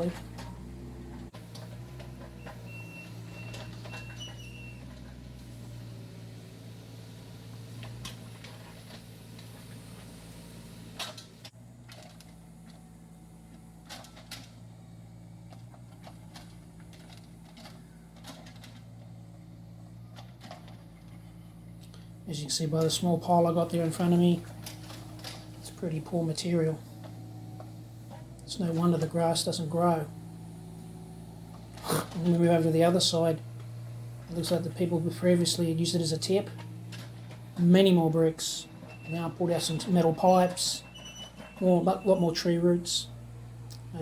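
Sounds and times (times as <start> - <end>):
excavator diesel engine running: 0.0 - 44.0.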